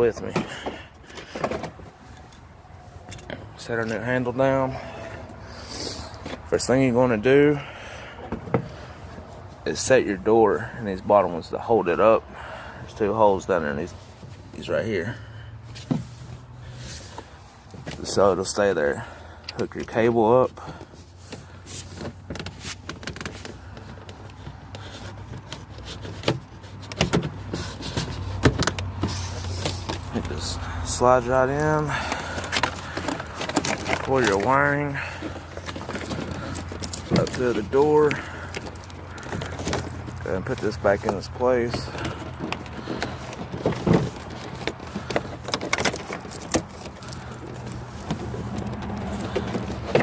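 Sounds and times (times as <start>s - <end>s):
plastic parts clicking and knocking: 0.2s - 2.4s, 20.8s - 30.5s, 31.4s - 50.0s.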